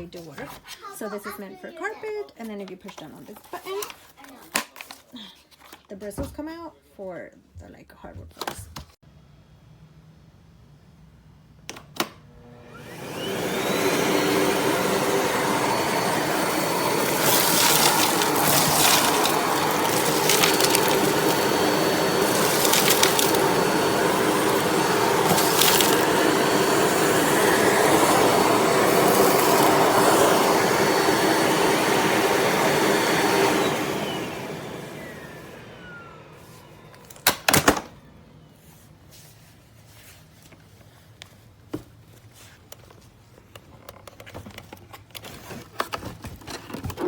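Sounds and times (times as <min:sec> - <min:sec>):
vacuum motor whine: 0:12.2 - 0:38.6.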